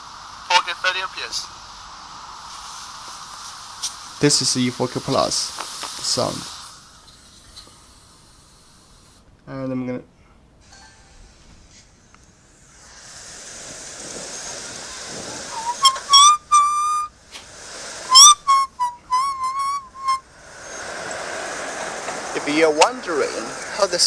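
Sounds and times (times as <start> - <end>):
steady hiss: 0.0 - 24.0
person whistling: 15.5 - 17.1, 18.1 - 20.2.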